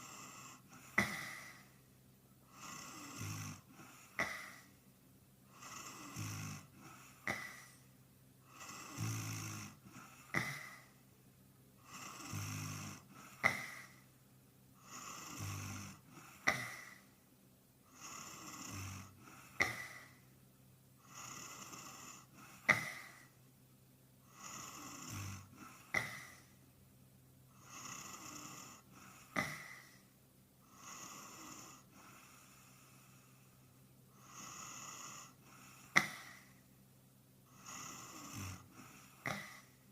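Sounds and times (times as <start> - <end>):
man snoring: 0.0 - 1.7, 2.5 - 4.7, 5.5 - 7.8, 8.5 - 11.0, 11.8 - 14.0, 14.8 - 17.1, 17.9 - 20.2, 21.0 - 23.4, 24.3 - 26.5, 27.6 - 30.0, 30.7 - 33.5, 34.1 - 36.6, 37.5 - 39.8.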